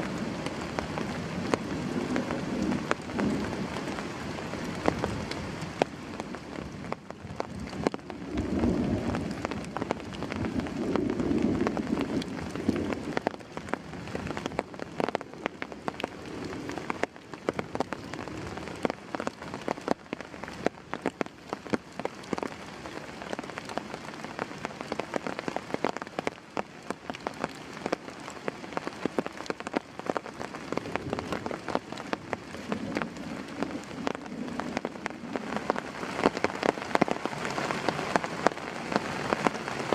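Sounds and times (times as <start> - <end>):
heavy rain falling: 0.0 - 39.9
raindrops pattering: 0.0 - 39.9.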